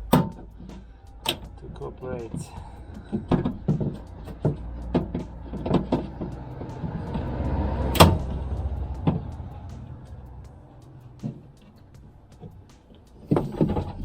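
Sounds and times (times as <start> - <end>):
handling rumble: 0.0 - 14.0.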